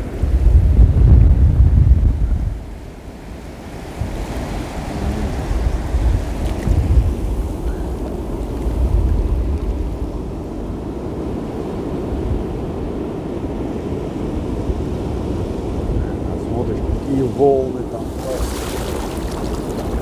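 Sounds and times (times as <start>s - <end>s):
wind rumbling on microphone: 0.0s - 20.0s
surf breaking on shore: 2.6s - 10.0s, 11.8s - 20.0s.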